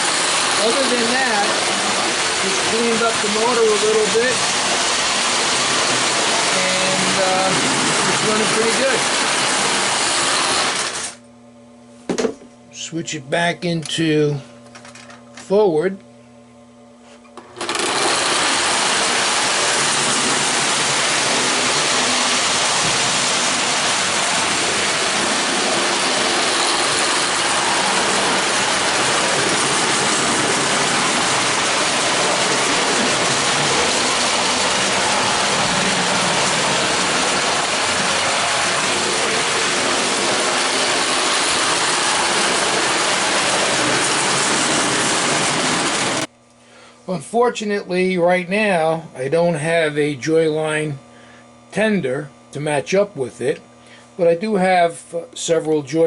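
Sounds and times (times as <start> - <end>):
toy train motor whirring: 0.0 - 11.2, 17.5 - 46.2.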